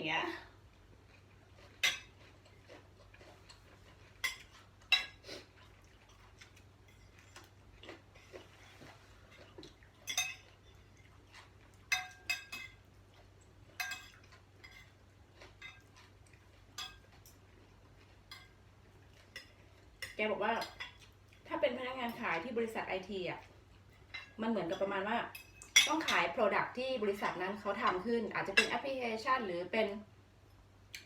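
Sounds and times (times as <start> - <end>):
cutlery clinking against plates: 1.8 - 2.5, 4.1 - 5.2, 9.3 - 12.9, 13.8 - 16.1, 16.7 - 17.5, 18.2 - 18.6, 19.2 - 21.1, 23.9 - 26.2, 27.9 - 28.8.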